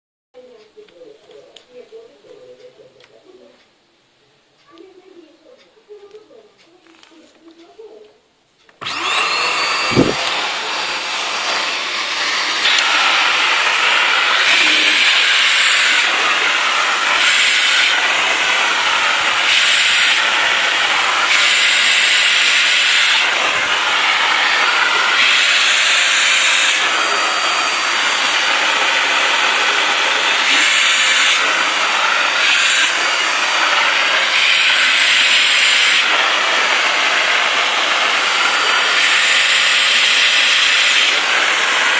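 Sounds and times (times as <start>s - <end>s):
vacuum cleaner running: 8.8s - 41.9s.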